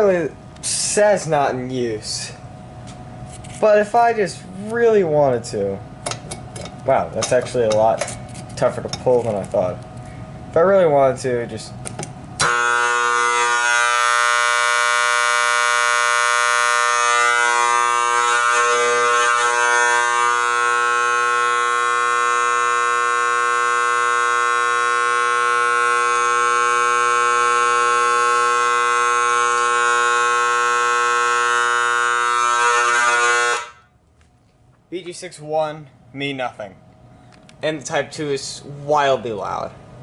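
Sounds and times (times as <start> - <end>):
fire alarm horn buzzing: 12.4 - 34.0.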